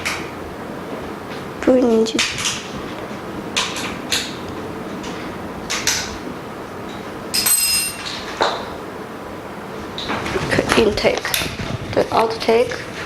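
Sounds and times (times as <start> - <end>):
parts knocking and clicking: 2.2 - 6.2
light metallic ring: 7.3 - 8.2.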